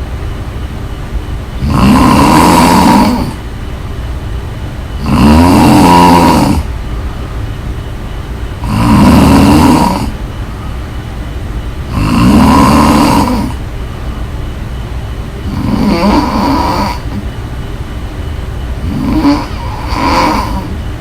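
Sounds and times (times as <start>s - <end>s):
person snoring: 1.6s - 3.4s, 5.0s - 6.7s, 8.6s - 10.2s, 11.9s - 13.6s, 15.4s - 17.3s, 18.8s - 20.8s
quiet breathing: 6.4s - 7.7s, 9.2s - 12.0s.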